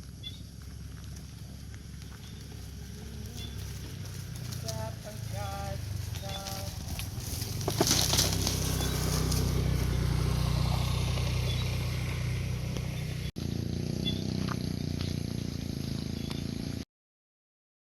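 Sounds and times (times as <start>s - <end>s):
vehicle engine humming: 0.0s - 16.8s.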